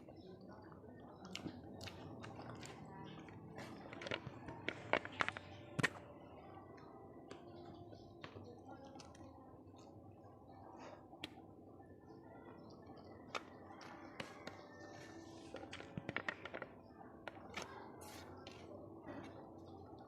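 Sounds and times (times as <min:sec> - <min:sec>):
chewing with soft clicks: 0:00.0 - 0:06.0.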